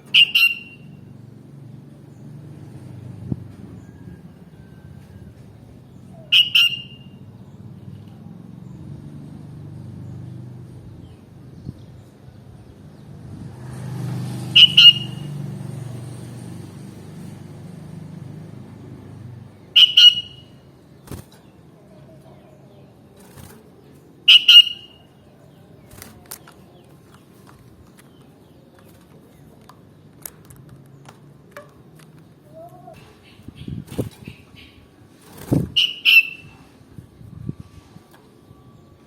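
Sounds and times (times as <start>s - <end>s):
bird calling: 0.0s - 1.0s, 6.0s - 7.2s, 14.6s - 15.3s, 19.7s - 21.1s, 24.2s - 26.8s, 35.7s - 36.7s.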